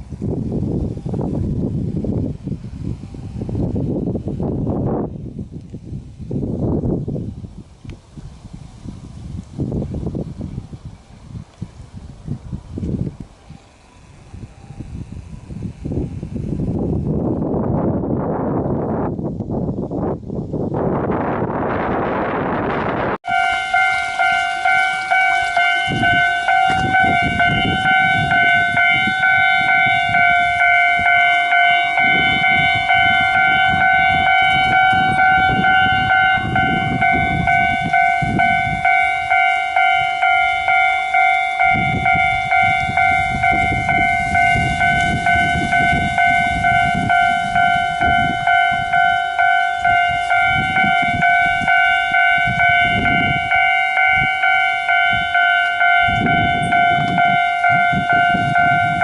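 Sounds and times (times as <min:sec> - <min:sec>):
low rumble of passing trains: 0:00.0 - 0:59.0
electronic crossing bell ringing: 0:23.2 - 0:59.0.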